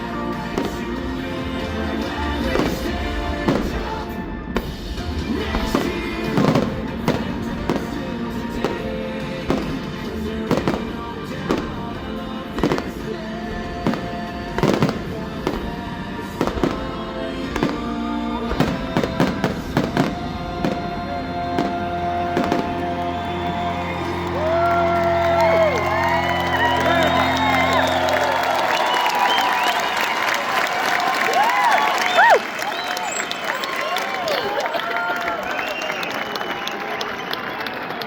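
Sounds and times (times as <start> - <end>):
music: 0.0 - 34.0
fireworks bangs: 0.3 - 30.6.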